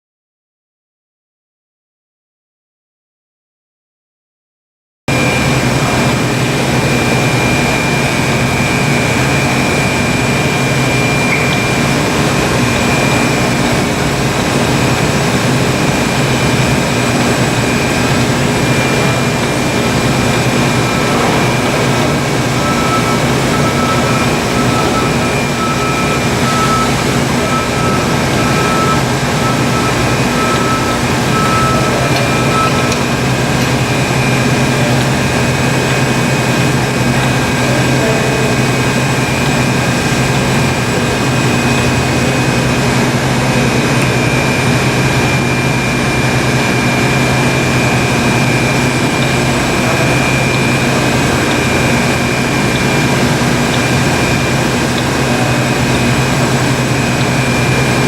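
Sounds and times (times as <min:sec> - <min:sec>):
lathe motor humming: 0:05.1 - 0:58.0
whining tones: 0:05.1 - 0:58.0.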